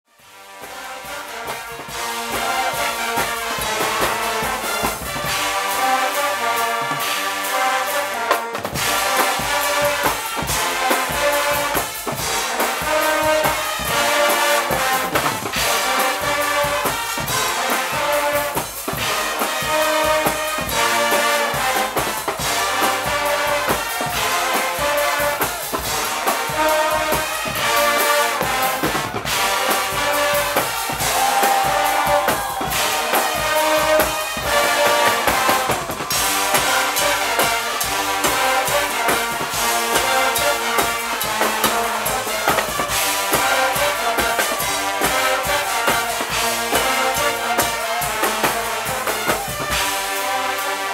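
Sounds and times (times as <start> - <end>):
loud brass horns: 0.0 - 50.9
marching drums: 0.1 - 50.9.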